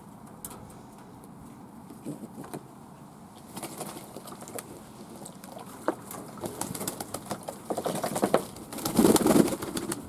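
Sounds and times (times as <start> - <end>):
clicks and rustles of doves: 3.4 - 10.0.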